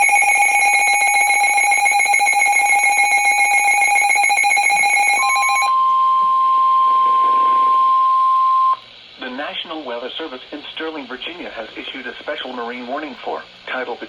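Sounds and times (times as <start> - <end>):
harsh buzzing alarm tone: 0.0 - 8.8
steady high alarm tone: 0.0 - 8.8.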